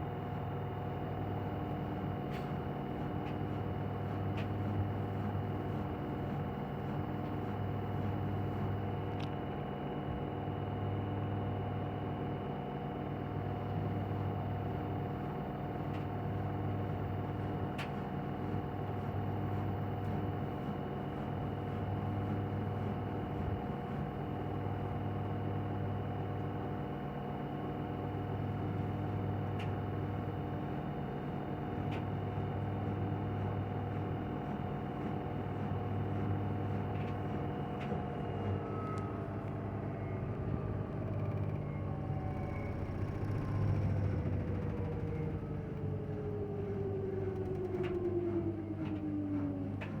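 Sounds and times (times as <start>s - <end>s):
washing machine spinning: 27.4s - 50.0s.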